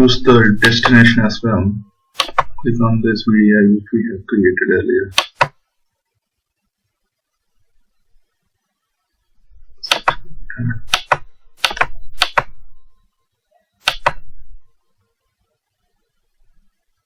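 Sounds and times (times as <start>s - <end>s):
computer mouse button clicking: 2.2s - 2.6s, 5.1s - 5.5s, 9.8s - 10.3s, 10.9s - 12.6s, 13.8s - 14.3s.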